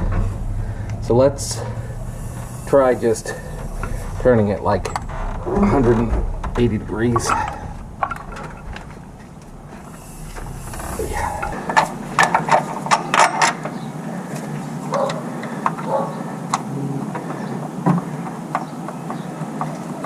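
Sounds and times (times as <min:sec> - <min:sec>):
faint knocks: 0:00.0 - 0:13.8
low steady rumble: 0:00.0 - 0:14.8.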